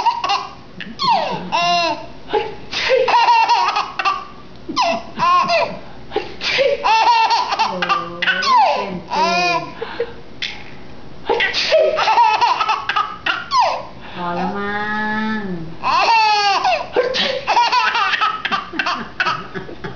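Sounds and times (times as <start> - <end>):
baby laughing: 0.0 - 2.1, 2.8 - 5.8, 6.5 - 9.8, 11.3 - 13.9, 15.8 - 19.9.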